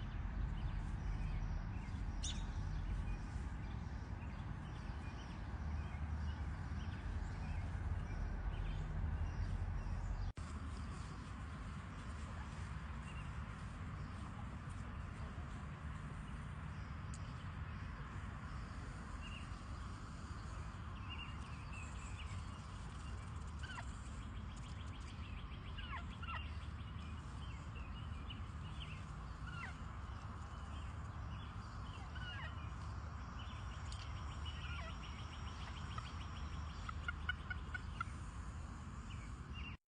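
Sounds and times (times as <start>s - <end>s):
steady low rumble: 0.0s - 39.8s
poultry peeping and calling: 19.1s - 39.8s.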